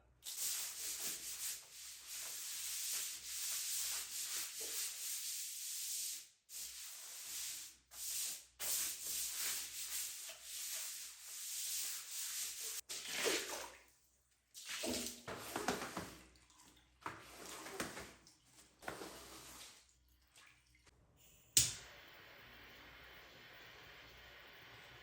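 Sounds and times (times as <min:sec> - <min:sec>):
scrubbing strokes: 0:00.3 - 0:13.8, 0:14.6 - 0:20.9.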